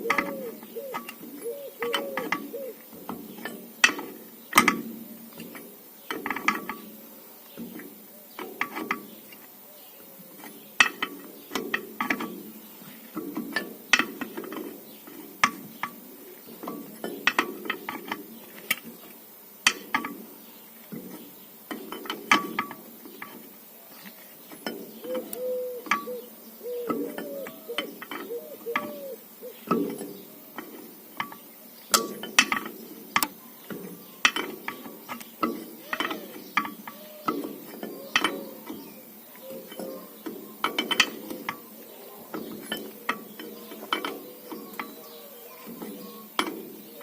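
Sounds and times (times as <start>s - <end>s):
steady background noise: 0.0s - 47.0s
sharp clinks and knocks: 29.7s - 41.7s, 42.3s - 47.0s.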